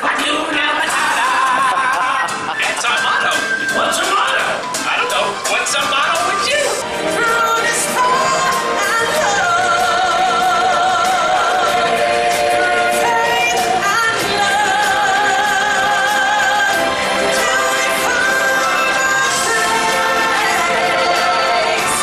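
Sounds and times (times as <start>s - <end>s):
band accompaniment: 0.0s - 22.0s
singers holding notes with vibrato: 6.2s - 22.0s.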